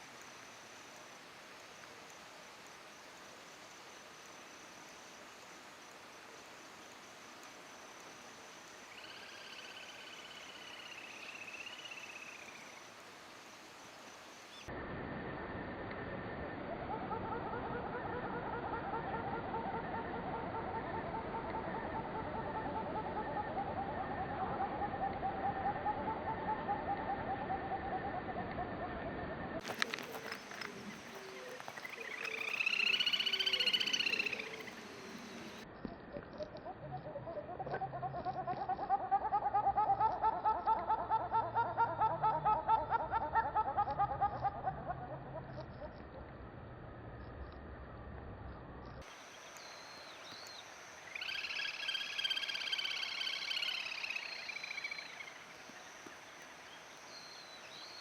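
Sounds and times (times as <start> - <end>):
little grebe trilling: 29.6 - 35.6.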